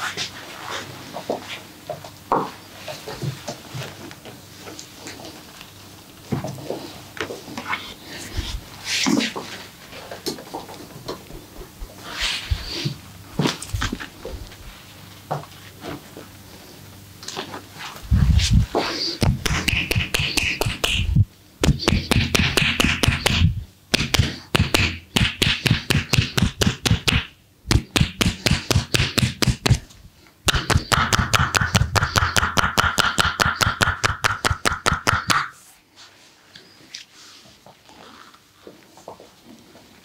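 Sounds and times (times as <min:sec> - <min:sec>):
hands slapping a body: 0:19.2 - 0:29.9, 0:30.5 - 0:35.6.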